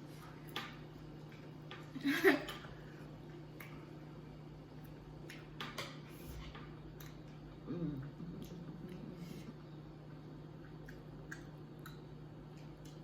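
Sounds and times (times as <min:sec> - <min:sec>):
quiet eating sounds: 0:00.0 - 0:13.0
steady low hum: 0:00.0 - 0:13.0
person murmuring: 0:07.6 - 0:09.4.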